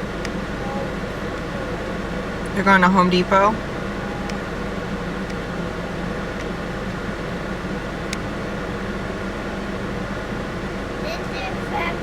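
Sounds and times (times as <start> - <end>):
vehicle idling hum: 0.0 - 12.0
ventilation air rush: 0.0 - 12.0.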